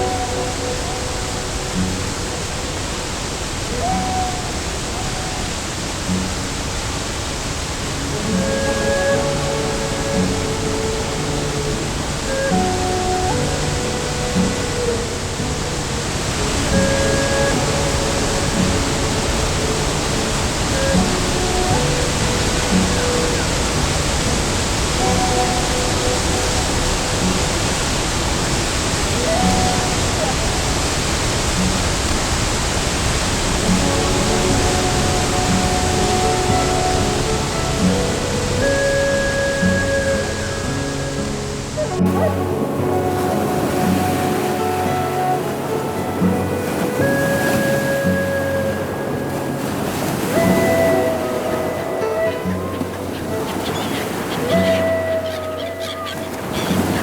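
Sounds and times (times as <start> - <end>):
faint music notes: 0.0 - 57.0
rushing hiss: 0.0 - 57.0.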